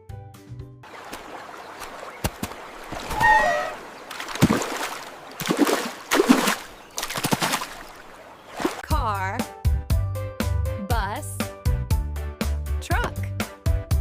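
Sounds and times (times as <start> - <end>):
water splashing and sloshing: 0.8 - 9.0
brief warbling squeak: 3.0 - 3.9.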